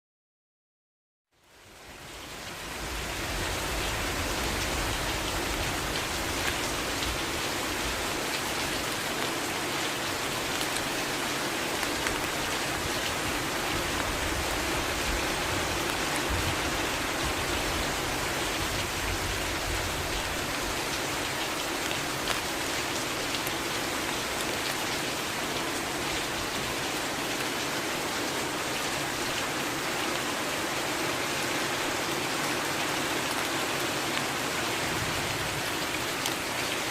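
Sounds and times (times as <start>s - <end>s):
raindrops pattering on surface: 2.2s - 27.7s, 32.8s - 36.9s.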